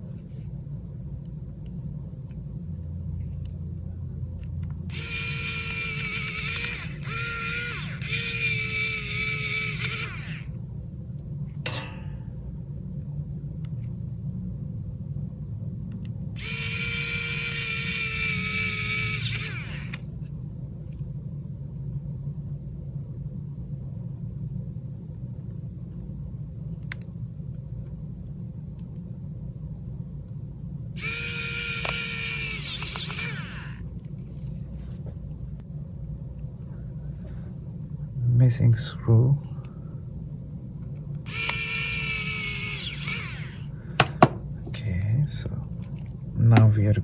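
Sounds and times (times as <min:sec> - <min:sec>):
low steady hum: 0:00.0 - 0:47.0
electric screwdriver whirring: 0:04.9 - 0:10.6, 0:16.4 - 0:20.1, 0:31.0 - 0:33.8, 0:41.3 - 0:44.4.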